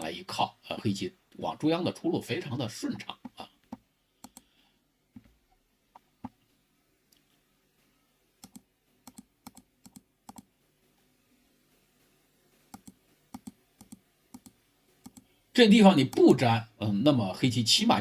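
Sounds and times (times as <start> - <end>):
computer mouse clicks: 3.2 - 4.5, 8.4 - 10.5, 12.7 - 15.3.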